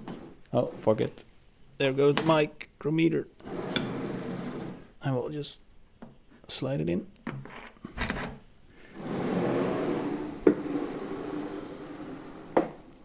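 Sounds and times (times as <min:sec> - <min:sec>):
sliding table rolling on rail: 0:03.4 - 0:04.9, 0:09.0 - 0:13.0.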